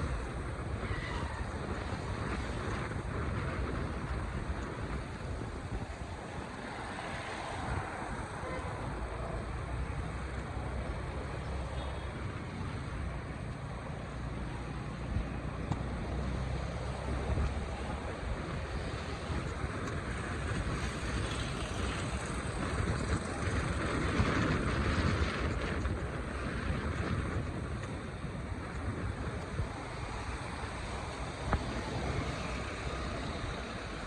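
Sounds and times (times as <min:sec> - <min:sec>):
traffic rumble: 0:00.0 - 0:34.0
rain hiss on wet roads: 0:18.6 - 0:34.0.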